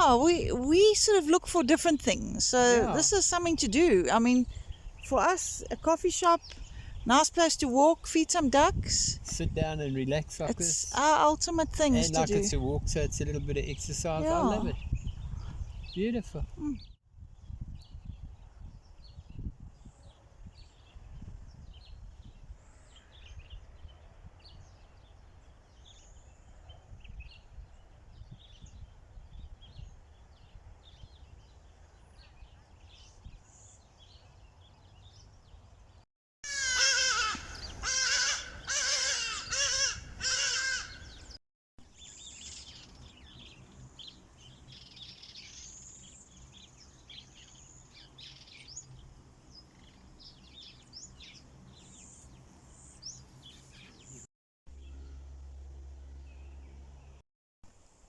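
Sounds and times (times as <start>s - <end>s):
low wind rumble: 0.0s - 1.2s, 2.0s - 33.5s
small birds chirping: 0.0s - 36.0s, 37.1s - 55.1s
loud harsh bird calls: 36.4s - 41.4s.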